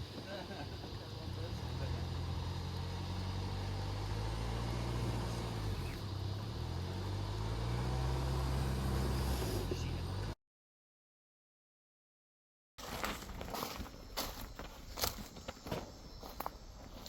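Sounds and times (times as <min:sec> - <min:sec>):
vehicle engine running at low revs: 0:00.0 - 0:10.4.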